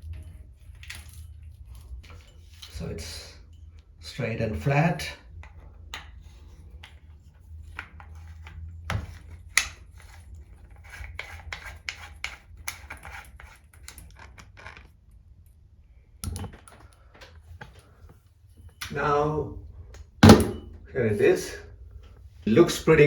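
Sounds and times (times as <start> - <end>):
shower fittings scratching and clicking: 0.0 - 3.8, 5.4 - 15.1.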